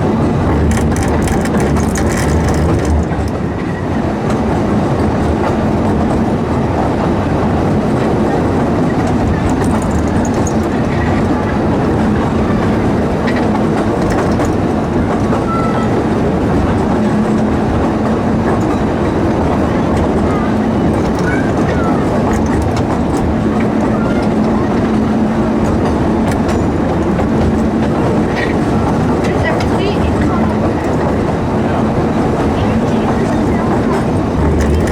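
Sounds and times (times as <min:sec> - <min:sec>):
train wheels rumbling on rails: 0:00.0 - 0:34.9
light clatter: 0:33.1 - 0:34.9.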